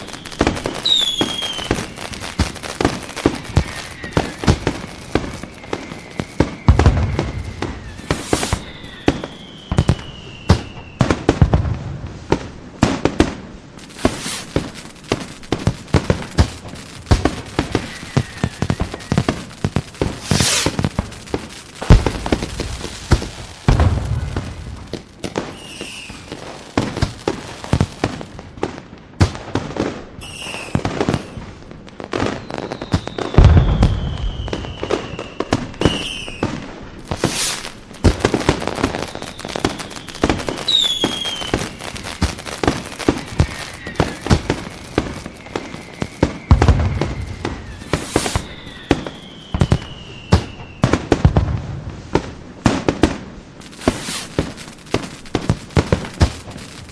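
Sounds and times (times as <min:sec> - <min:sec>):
fireworks crackling and popping: 0:00.0 - 0:56.9
fireworks deep booms: 0:00.0 - 0:56.9
fireworks whistles gliding down: 0:00.0 - 0:56.9.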